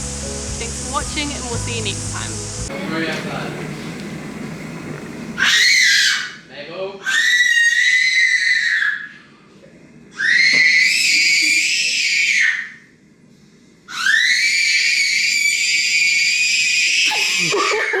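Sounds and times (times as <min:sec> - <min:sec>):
high-pitched screams: 0:05.4 - 0:09.3, 0:10.1 - 0:12.9, 0:13.9 - 0:18.0.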